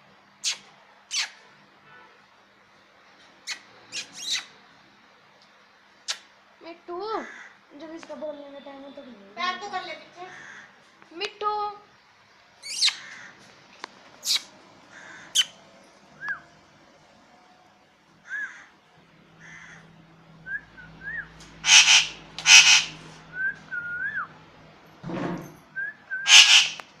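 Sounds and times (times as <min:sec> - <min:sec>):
parrot squawks: 0:00.4 - 0:01.4, 0:03.4 - 0:04.6, 0:12.6 - 0:13.3, 0:14.2 - 0:15.6, 0:21.6 - 0:23.0, 0:26.2 - 0:26.9
parrot whistling: 0:20.5 - 0:24.3, 0:25.8 - 0:26.8
parrot screeches: 0:21.6 - 0:23.0, 0:26.2 - 0:26.9.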